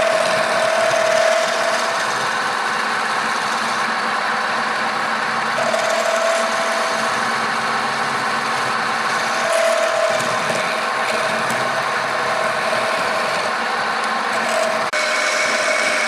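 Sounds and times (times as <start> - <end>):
wood lathe running: 0.0 - 16.0
rubbing on spinning wood: 5.6 - 13.6.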